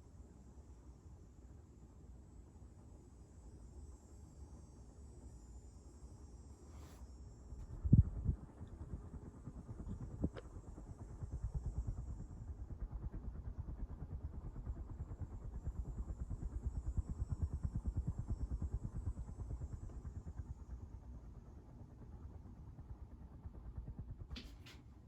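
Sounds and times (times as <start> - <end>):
ceiling fan pulsing: 6.7 - 25.0.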